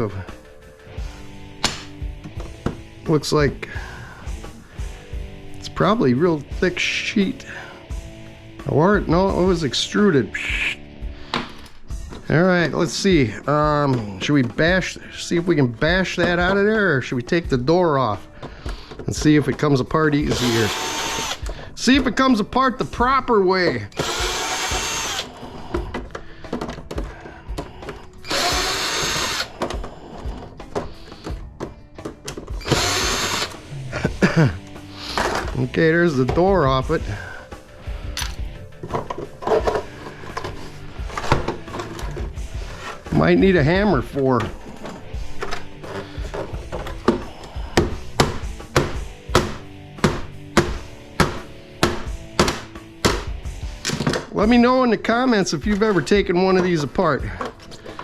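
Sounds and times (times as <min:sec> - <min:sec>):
background music with steady beat: 0:00.0 - 0:58.0
power drill backing out screws: 0:20.2 - 0:21.6, 0:23.6 - 0:29.9, 0:32.2 - 0:33.6
plastic parts clicking and knocking: 0:23.6 - 0:33.6, 0:38.2 - 0:42.4, 0:44.4 - 0:54.5, 0:55.6 - 0:58.0.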